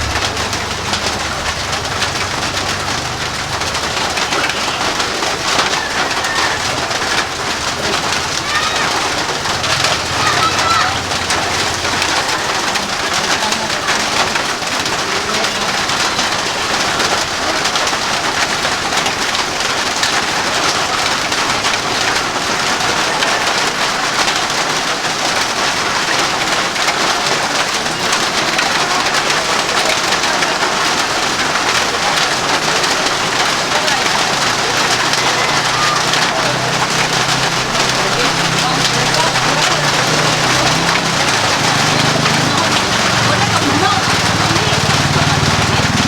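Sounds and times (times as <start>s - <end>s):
steady rain falling: 0.0s - 46.0s.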